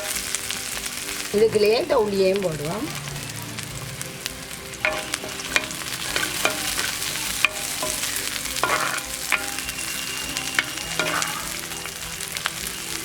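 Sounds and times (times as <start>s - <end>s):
shallots and garlic sizzling in oil: 0.0s - 13.0s
utensil scraping a pan: 4.8s - 12.0s.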